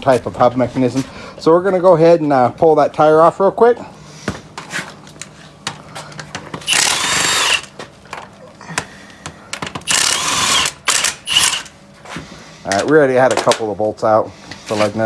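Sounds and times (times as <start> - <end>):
impact wrench running: 6.6 - 7.8, 9.7 - 11.8.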